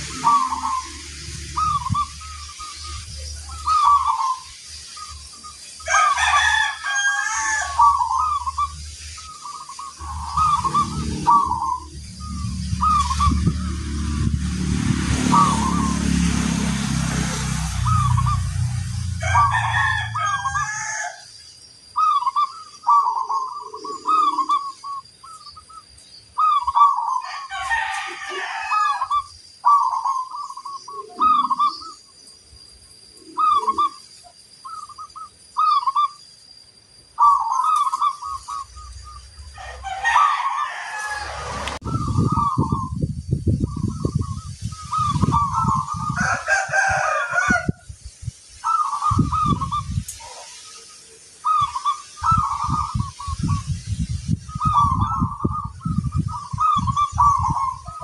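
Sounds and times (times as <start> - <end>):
doves cooing: 0.0 - 14.3, 15.0 - 21.2, 22.0 - 25.8, 26.4 - 32.1, 33.2 - 36.2, 37.2 - 43.0, 43.6 - 47.8, 48.6 - 53.6, 54.5 - 58.0
low rumble: 9.9 - 20.7.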